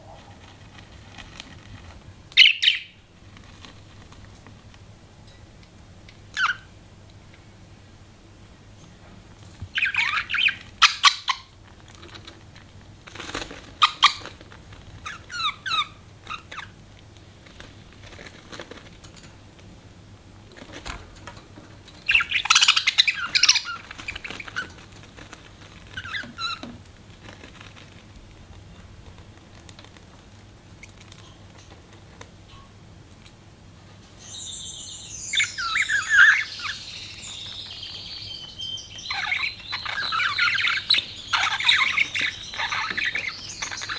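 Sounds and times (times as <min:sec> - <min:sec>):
budgerigars chirping: 0:02.4 - 0:03.0, 0:06.4 - 0:06.7, 0:09.7 - 0:11.6, 0:13.8 - 0:14.4, 0:15.0 - 0:16.8, 0:22.0 - 0:24.8, 0:25.9 - 0:26.7, 0:34.2 - 0:43.9.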